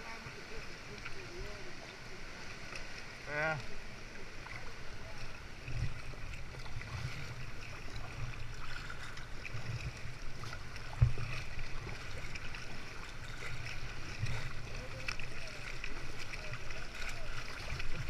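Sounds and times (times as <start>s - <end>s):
paddle splashing water: 0.0s - 18.0s.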